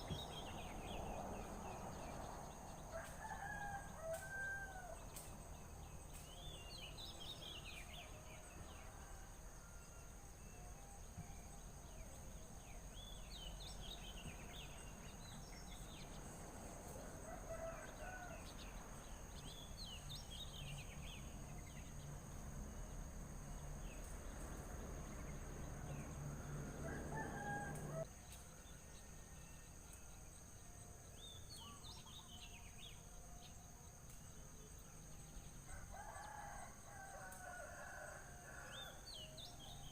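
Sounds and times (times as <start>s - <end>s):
rooster crowing: 2.9s - 5.1s, 17.2s - 18.6s, 25.8s - 28.1s, 35.7s - 39.1s.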